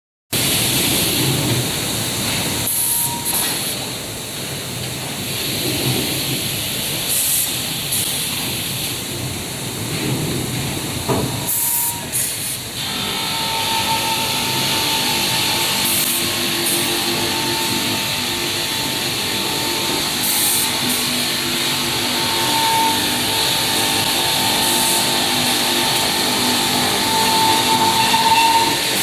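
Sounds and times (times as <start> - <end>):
cutting machine hissing: 11.4 - 29.0.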